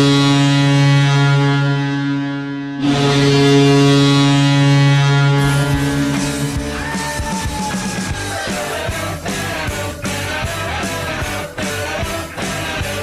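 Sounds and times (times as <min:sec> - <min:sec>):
goal horn blast: 0:00.0 - 0:08.2
rock music with drums and guitar: 0:05.4 - 0:13.0.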